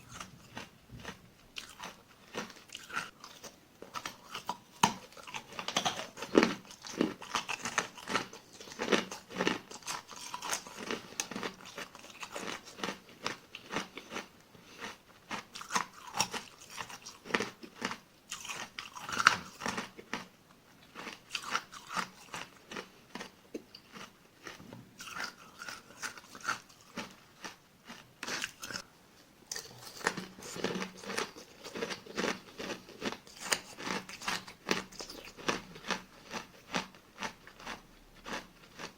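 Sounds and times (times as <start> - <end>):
ice being chewed: 0.0 - 20.3, 20.9 - 28.8, 29.5 - 38.9.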